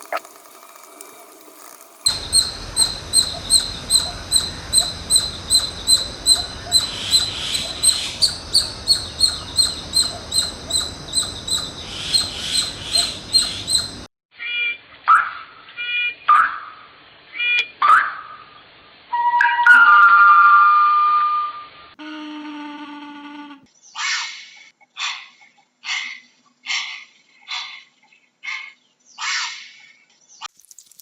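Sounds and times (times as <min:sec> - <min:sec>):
young bird peeping: 0:02.1 - 0:14.1.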